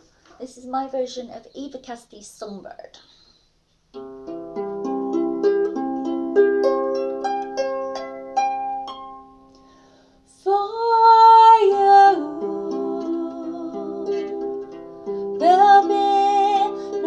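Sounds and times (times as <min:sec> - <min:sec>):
harp plucked notes: 0:04.0 - 0:09.8, 0:11.0 - 0:17.0
woman singing: 0:10.4 - 0:14.6, 0:15.3 - 0:17.0.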